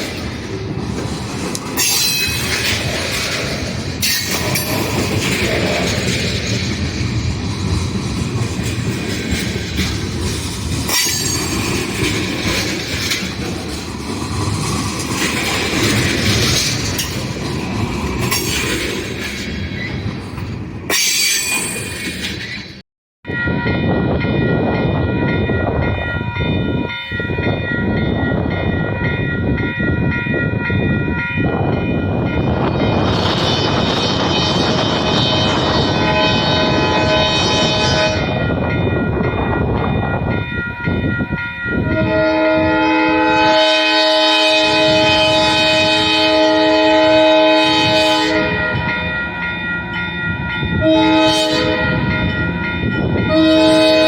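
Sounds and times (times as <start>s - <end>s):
train rumbling along track: 0.0s - 54.0s
locomotive horn chord: 34.2s - 38.4s, 41.9s - 48.9s, 50.8s - 52.1s, 53.3s - 54.0s.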